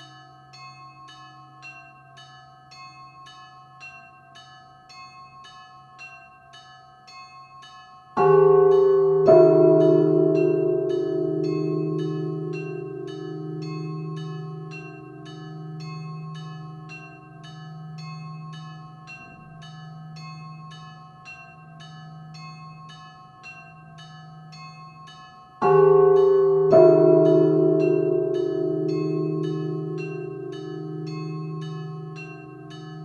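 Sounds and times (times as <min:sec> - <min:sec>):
smaller bells ringing: 0:00.0 - 0:33.0
large bell deep tone: 0:08.2 - 0:21.0, 0:25.6 - 0:33.0.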